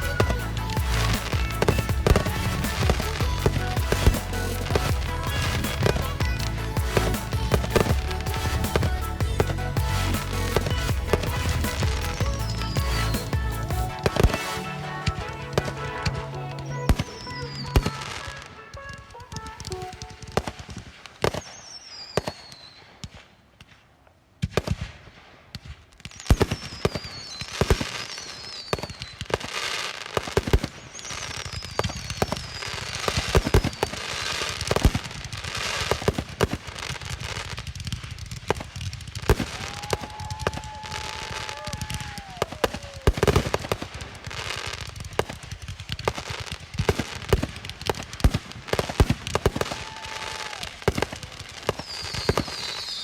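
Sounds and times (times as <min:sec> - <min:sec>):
firework bangs and crackling: 0:00.0 - 0:53.0
falling firework whistles: 0:16.6 - 0:23.0, 0:26.4 - 0:29.9, 0:30.6 - 0:34.8, 0:49.0 - 0:53.0.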